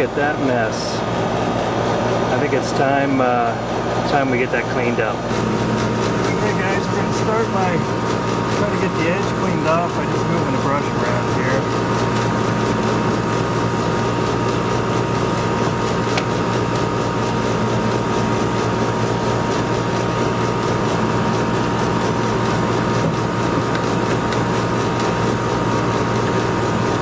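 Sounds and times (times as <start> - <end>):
air conditioner hum and fan: 0.0 - 27.0.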